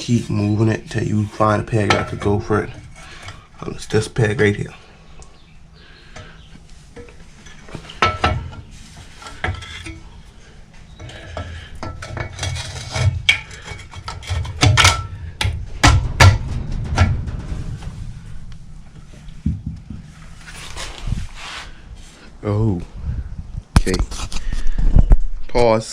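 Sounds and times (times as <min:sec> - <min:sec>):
metal clinking and scraping: 0:06.2 - 0:10.3, 0:11.0 - 0:21.6.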